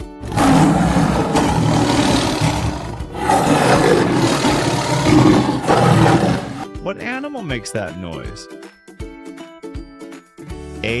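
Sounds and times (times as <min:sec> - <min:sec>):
lion roaring: 0:00.2 - 0:06.7.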